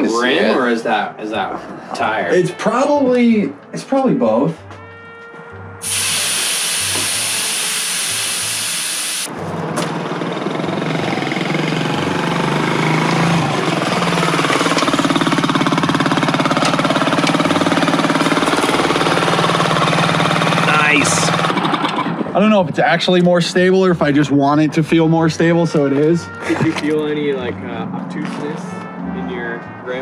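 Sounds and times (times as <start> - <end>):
small motorcycle engine running: 9.9 - 22.2.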